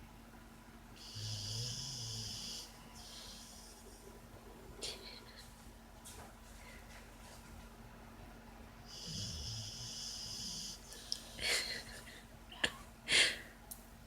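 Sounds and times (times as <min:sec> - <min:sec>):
puppy snoring: 0:01.0 - 0:03.9, 0:08.9 - 0:10.9.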